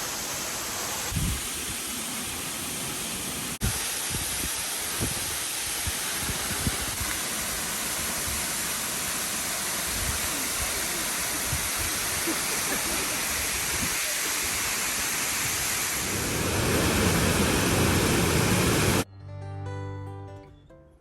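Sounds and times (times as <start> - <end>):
wind rushing on microphone: 1.1 - 1.7, 15.4 - 19.0
low wind buffeting thumps: 16.0 - 19.0.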